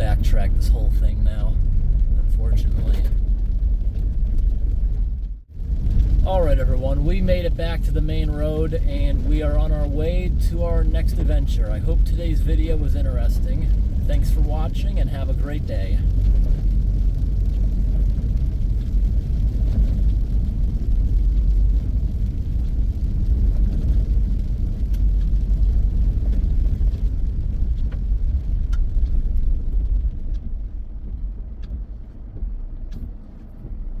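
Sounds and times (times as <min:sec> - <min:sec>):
vehicle engine and road rumble: 0:00.0 - 0:34.0
faint clicks: 0:27.6 - 0:34.0.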